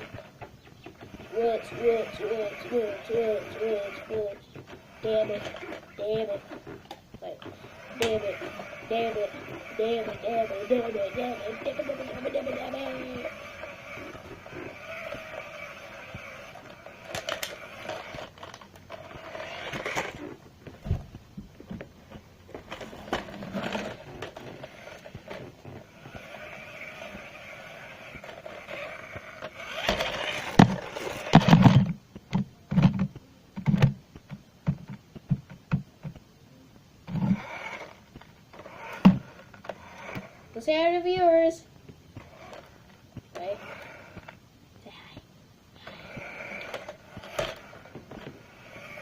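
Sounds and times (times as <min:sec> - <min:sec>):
toy car motor whirring: 0:00.0 - 0:20.4, 0:22.5 - 0:31.8, 0:37.2 - 0:41.5, 0:42.2 - 0:44.4, 0:45.8 - 0:49.0
scraping and clicks: 0:00.0 - 0:20.8, 0:21.6 - 0:32.0, 0:45.8 - 0:49.0.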